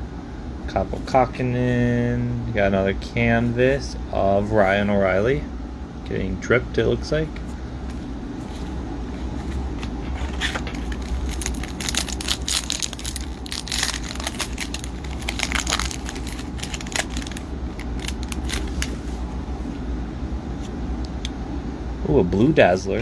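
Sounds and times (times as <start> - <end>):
steady low hum: 0.0 - 23.0
foil wrapper crinkling and tearing: 10.3 - 19.3.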